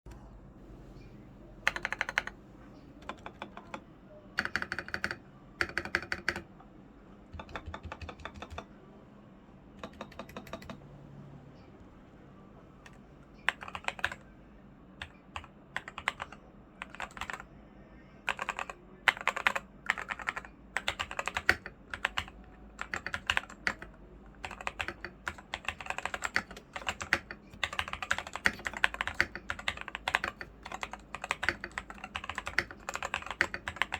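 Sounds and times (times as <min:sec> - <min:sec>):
typing on mechanical keyboard: 0:01.6 - 0:02.4, 0:03.0 - 0:06.5, 0:07.3 - 0:08.7, 0:09.8 - 0:10.8, 0:12.8 - 0:14.2, 0:15.0 - 0:17.5, 0:18.3 - 0:33.9.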